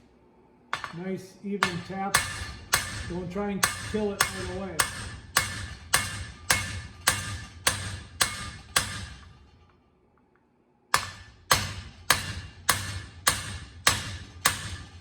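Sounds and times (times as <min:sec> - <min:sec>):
hammer tapping metal tool: 0:00.8 - 0:01.0, 0:01.6 - 0:09.2.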